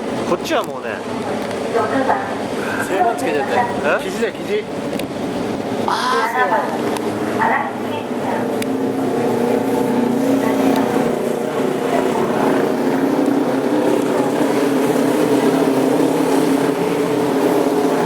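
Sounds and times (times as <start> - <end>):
motorcycle engines droning: 4.9 - 18.0.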